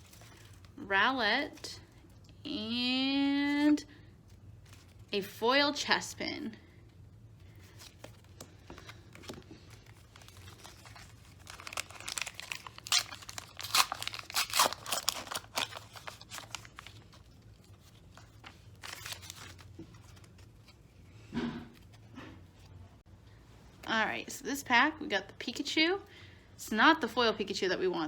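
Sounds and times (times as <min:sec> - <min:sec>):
card pack wrapper tearing: 0:07.8 - 0:20.2.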